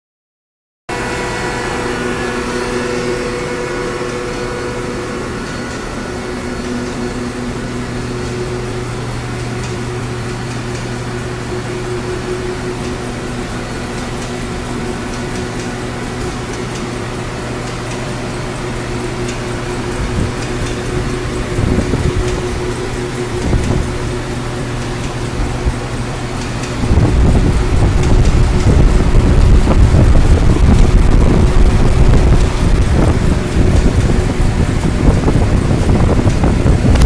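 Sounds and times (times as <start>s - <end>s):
lathe machine hum: 0.9s - 37.0s.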